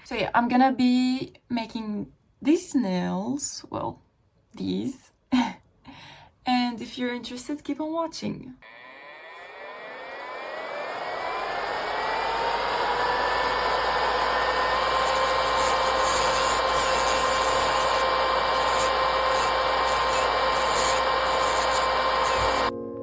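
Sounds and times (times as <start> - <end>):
electric nail drill whining: 8.6 - 22.7
rough filing hiss: 13.2 - 22.7.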